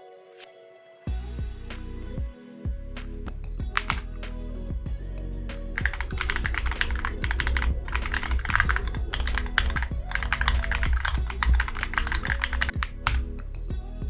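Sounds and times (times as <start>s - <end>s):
background music: 0.0s - 14.0s
mechanical keyboard typing: 3.8s - 4.2s, 5.7s - 13.3s.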